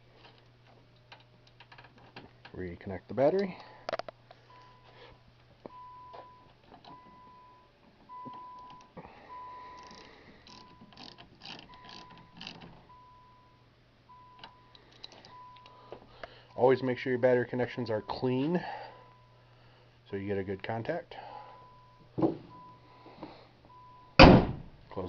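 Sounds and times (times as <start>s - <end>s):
car warning chime beeping: 5.7s - 9.8s, 11.6s - 19.4s, 21.4s - 23.0s, 23.7s - 24.2s
wrench clicking: 9.7s - 12.7s.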